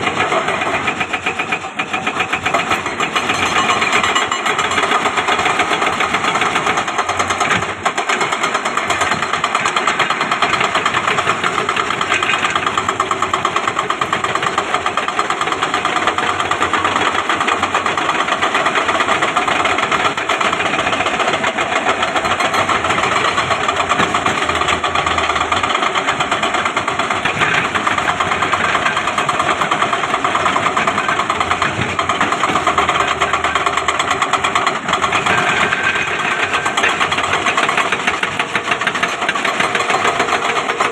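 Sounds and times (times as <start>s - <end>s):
excavator diesel engine pulsing: 0.0s - 40.9s.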